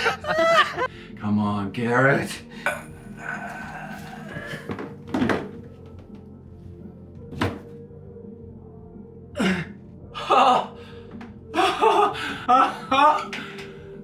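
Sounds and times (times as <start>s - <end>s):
background music: 0.0s - 14.0s
dull thunk: 4.7s - 5.7s, 7.3s - 7.7s.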